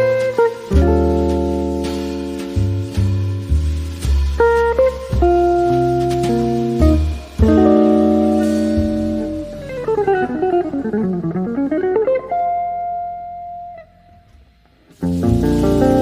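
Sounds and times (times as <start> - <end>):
solo guitar: 0.0 - 16.0.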